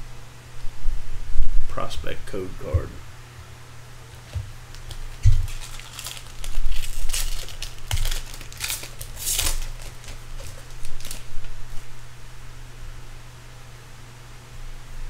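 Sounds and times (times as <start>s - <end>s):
foil wrapper crinkling and tearing: 4.2s - 11.8s.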